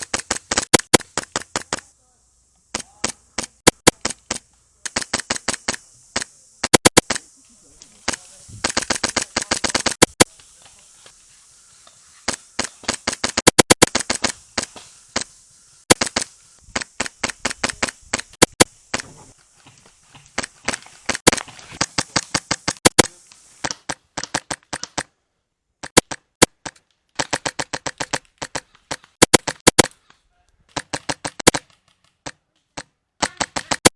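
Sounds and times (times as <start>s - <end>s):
airsoft rifle firing pops: 2.7s - 7.3s, 8.1s - 10.5s, 15.9s - 19.2s, 20.4s - 25.1s, 25.8s - 33.9s.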